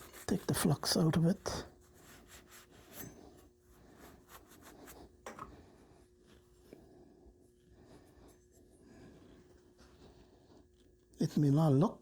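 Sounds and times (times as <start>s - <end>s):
rag rubbing on pipe: 0.0s - 1.2s.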